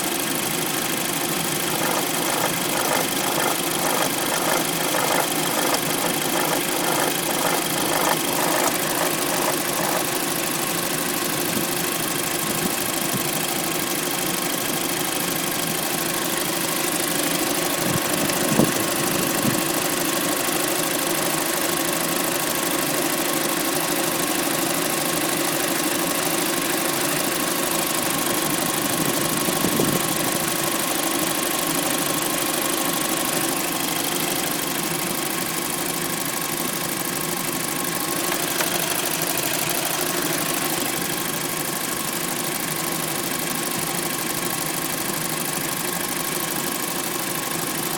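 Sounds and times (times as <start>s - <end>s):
fast rhythmic engine rattle: 0.0s - 47.9s
car engine idling: 0.3s - 13.3s.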